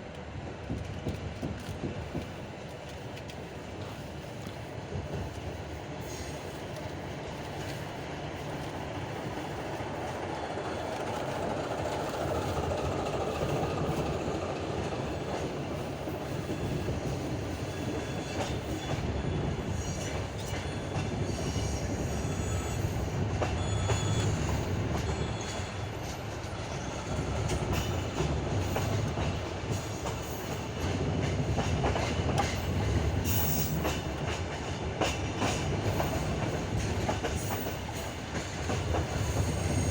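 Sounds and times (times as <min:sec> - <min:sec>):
train wheels rumbling on track: 0:00.0 - 0:39.9
high wheel squeals: 0:21.4 - 0:27.2.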